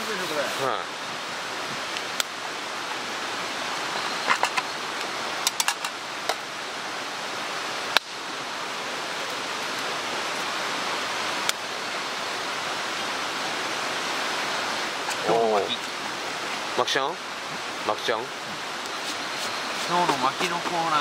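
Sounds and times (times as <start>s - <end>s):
mountain stream rushing: 0.0s - 21.0s
campfire crackling and popping: 1.7s - 2.4s, 4.2s - 6.6s, 7.8s - 8.5s, 11.4s - 11.7s.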